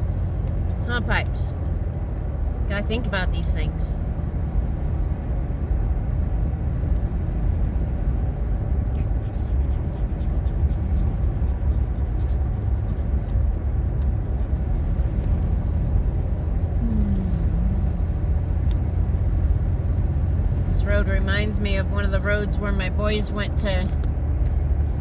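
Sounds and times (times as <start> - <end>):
truck rumbling on dirt road: 0.0 - 25.0.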